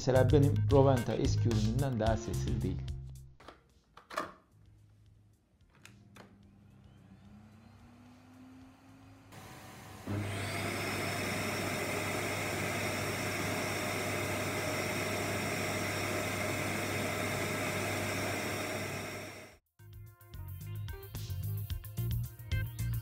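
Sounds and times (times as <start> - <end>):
vacuum cleaner motor whining: 6.1 - 19.6.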